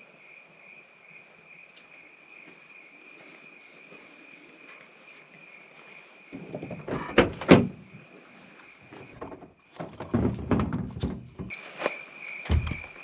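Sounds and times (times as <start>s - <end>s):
crickets trilling: 0.0s - 13.0s
clattering thuds and clunks: 6.4s - 7.9s, 8.9s - 11.6s, 12.5s - 13.0s.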